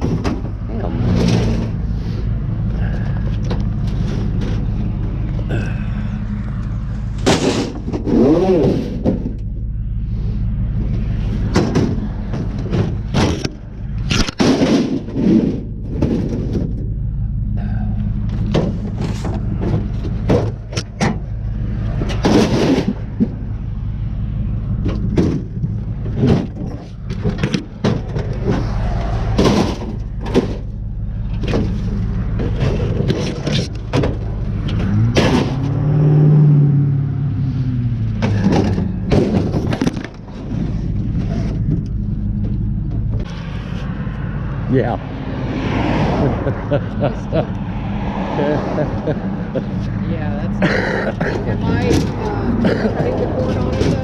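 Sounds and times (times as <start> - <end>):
engine running: 0.0 - 54.0
metal knocks and bangs: 11.3 - 13.7, 18.3 - 23.4, 24.8 - 30.8, 38.2 - 43.3.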